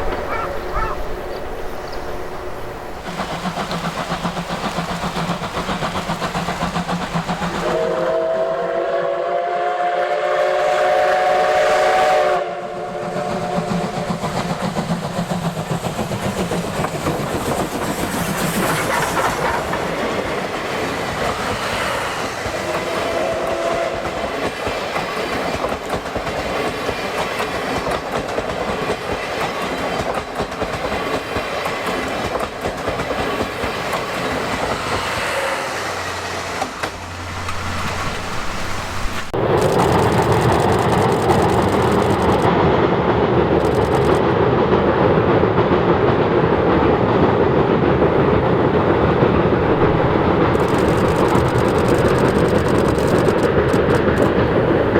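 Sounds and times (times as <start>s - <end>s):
train rolling noise: 0.0s - 54.9s
locomotive exhaust beats: 3.0s - 18.2s
steam whistle: 7.6s - 14.2s, 21.9s - 24.3s.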